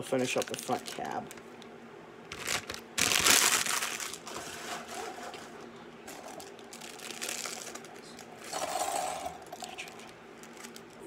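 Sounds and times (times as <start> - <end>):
plastic bag rustling: 0.2 - 1.5, 2.3 - 11.0
plastic pieces clattering: 2.3 - 5.0, 6.1 - 8.6.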